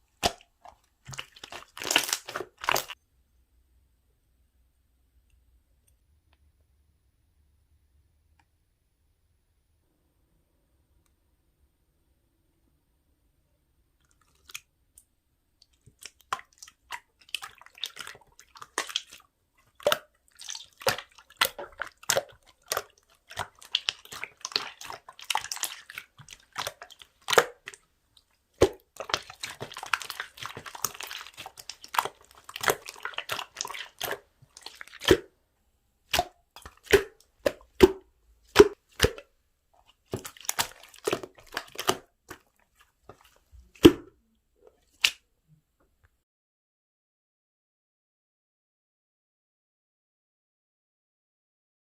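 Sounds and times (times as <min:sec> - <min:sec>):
slime squelching: 0:00.0 - 0:03.0, 0:14.0 - 0:45.2
slime clicking and popping: 0:01.1 - 0:03.0, 0:15.9 - 0:27.8, 0:28.6 - 0:35.3, 0:36.1 - 0:39.3.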